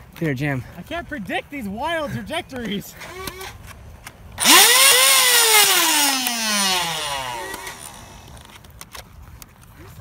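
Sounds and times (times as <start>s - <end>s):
toy blaster motors whining: 4.4s - 8.5s.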